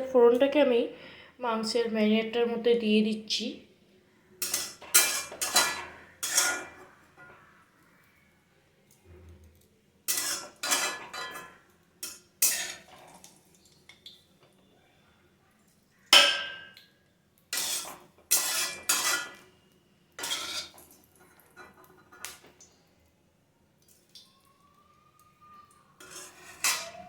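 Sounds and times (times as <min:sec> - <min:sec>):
metal spoon clanking against pan: 0:04.4 - 0:07.4, 0:10.1 - 0:13.0, 0:16.2 - 0:16.9, 0:17.6 - 0:19.4, 0:20.2 - 0:20.8, 0:26.0 - 0:27.0.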